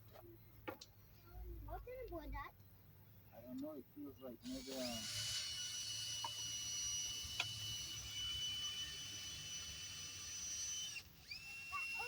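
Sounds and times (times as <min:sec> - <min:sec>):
electric drill whining: 0:04.4 - 0:12.0.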